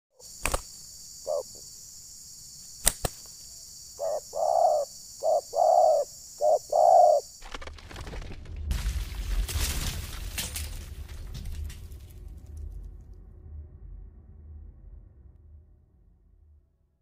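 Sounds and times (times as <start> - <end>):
sharp clicks: 0.4 - 0.8, 2.8 - 3.4
dove cooing: 1.2 - 1.6, 4.0 - 7.3.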